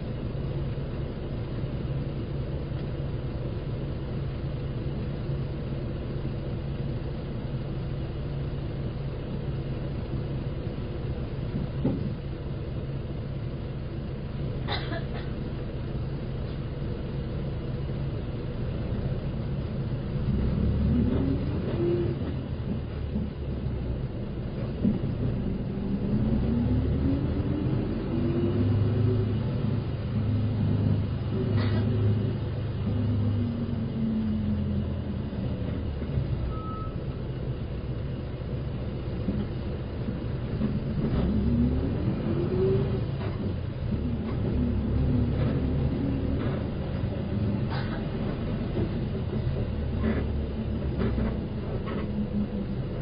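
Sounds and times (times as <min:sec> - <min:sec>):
bus diesel engine rumbling: 0:00.0 - 0:53.0
short beep: 0:36.4 - 0:37.1.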